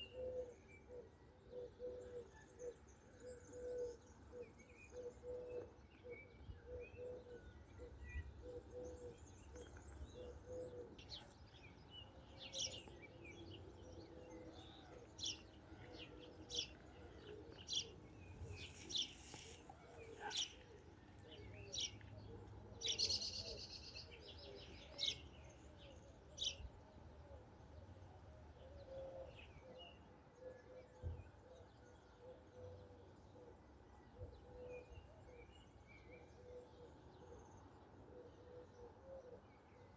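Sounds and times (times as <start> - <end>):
dove cooing: 0.0 - 11.3, 36.4 - 37.3, 38.1 - 39.5
songbirds chirping: 0.0 - 39.9.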